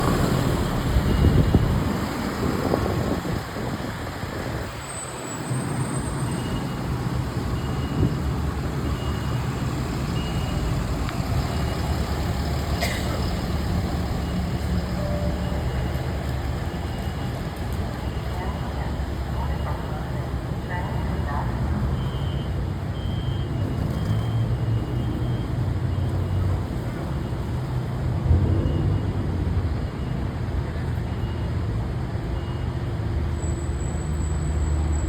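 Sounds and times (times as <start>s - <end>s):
heavy vehicle engine rumbling: 0.0s - 35.0s.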